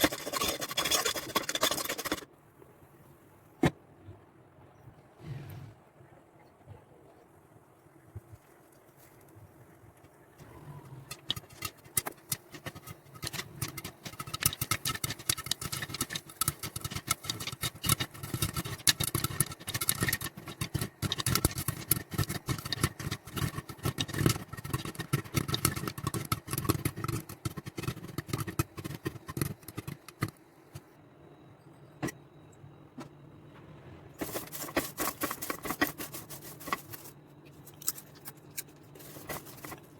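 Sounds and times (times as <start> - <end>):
popcorn kernels popping: 0.0 - 2.3, 10.9 - 30.9
low steady hum: 0.0 - 39.9.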